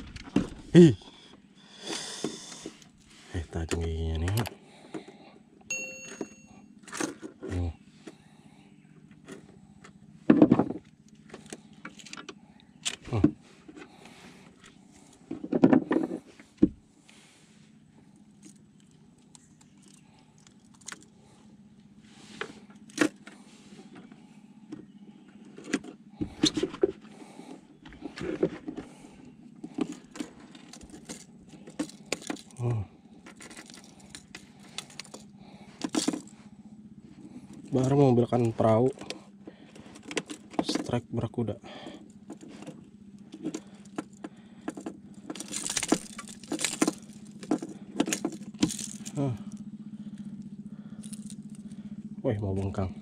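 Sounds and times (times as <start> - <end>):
steady low hum: 0.0 - 53.0.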